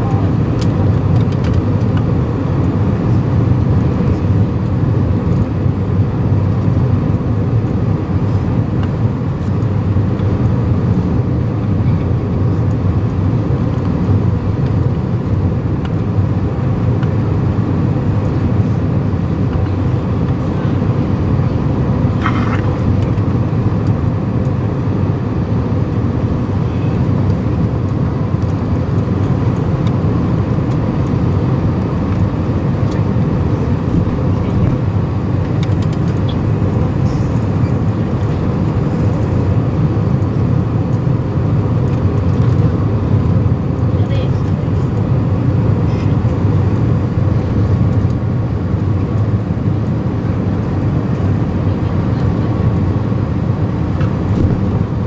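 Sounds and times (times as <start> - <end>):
wind buffeting microphone: 48.6 - 55.0.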